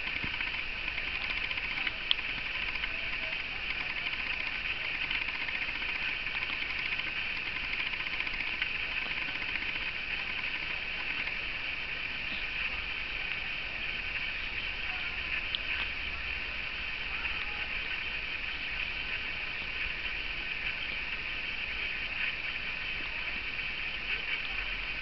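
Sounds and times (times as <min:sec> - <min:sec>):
faint ticks: 0:00.0 - 0:16.0
steady high-pitched hiss: 0:00.0 - 0:25.0.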